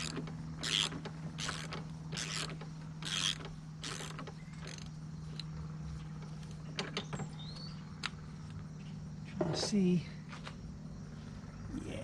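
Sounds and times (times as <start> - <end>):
ratchet wrench clicking: 0.0 - 5.5
steady low hum: 0.0 - 12.0.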